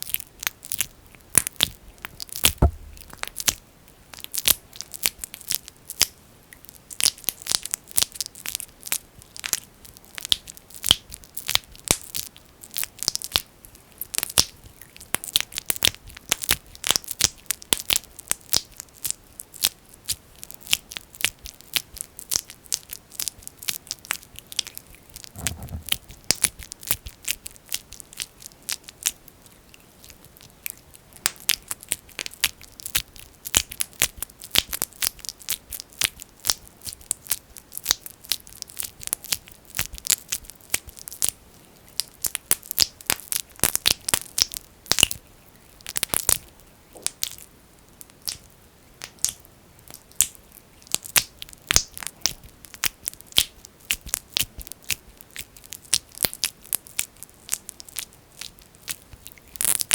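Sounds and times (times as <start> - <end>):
soft low thump: 2.5 - 3.3, 25.4 - 26.0.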